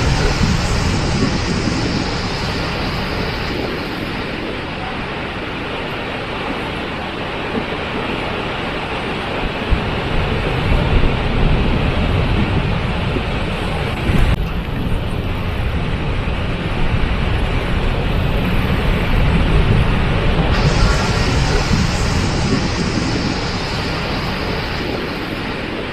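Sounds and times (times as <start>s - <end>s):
waterfall rushing: 0.0s - 7.0s, 20.5s - 25.9s.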